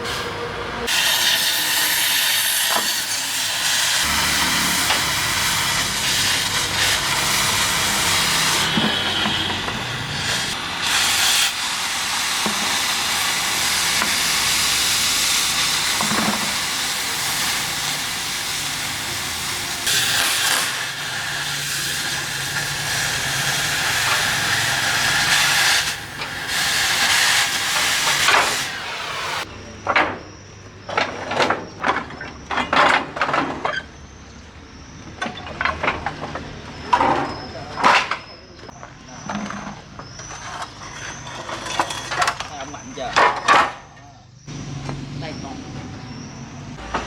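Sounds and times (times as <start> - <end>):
cutting torch hissing: 0.0 - 29.5.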